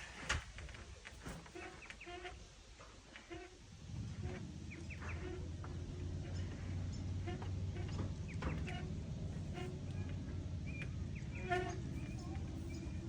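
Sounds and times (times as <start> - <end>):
steady low hum: 0.0 - 13.0
birds chirping: 3.9 - 13.0.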